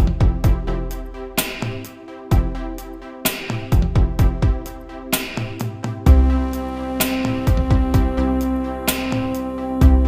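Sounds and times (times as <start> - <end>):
deep kick drums: 0.0 - 0.9, 3.7 - 4.8, 6.1 - 6.5, 7.4 - 8.4
sharp hi-hats: 0.0 - 10.0
held synth chords: 2.0 - 10.0.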